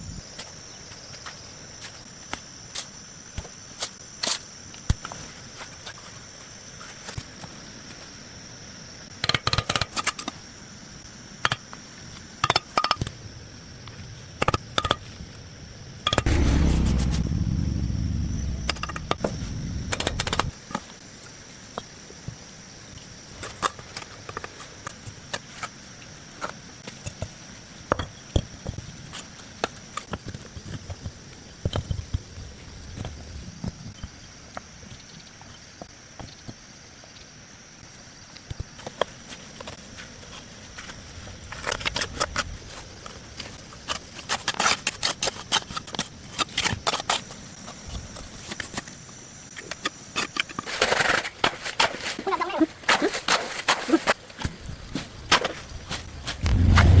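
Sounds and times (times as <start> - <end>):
rumbling scraping sound: 16.3 - 20.6, 56.0 - 57.0.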